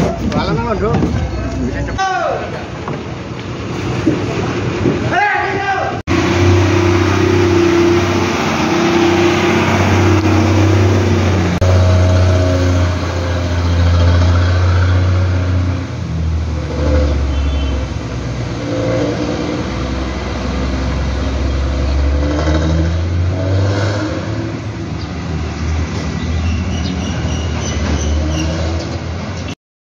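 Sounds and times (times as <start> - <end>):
bus diesel engine running: 5.9 - 22.1.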